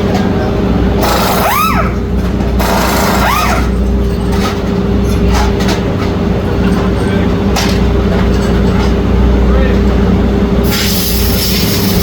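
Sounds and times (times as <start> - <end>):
machinery humming: 0.0 - 12.0
short rising and falling whines: 0.9 - 4.2.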